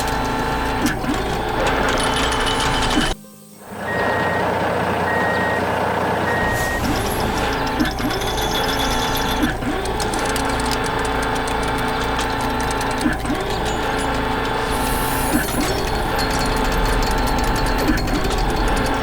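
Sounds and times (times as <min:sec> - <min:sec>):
engine hum: 0:00.0 - 0:19.0
reversing alarm beeping: 0:01.6 - 0:09.8, 0:13.2 - 0:19.0
rising mechanical whine: 0:03.0 - 0:19.0.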